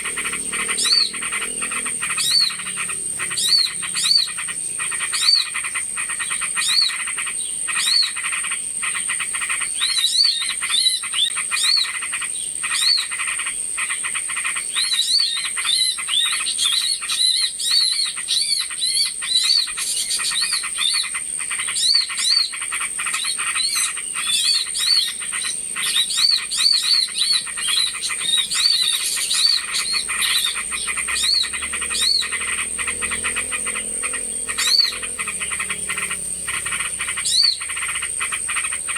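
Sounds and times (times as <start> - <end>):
small birds chirping: 0.0 - 38.9
high-pitched whine: 27.8 - 38.9.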